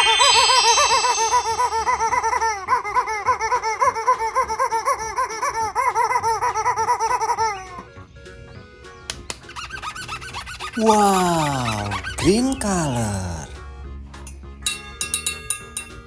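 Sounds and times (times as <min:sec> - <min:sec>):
baby giggling: 0:00.0 - 0:07.9, 0:10.8 - 0:12.2.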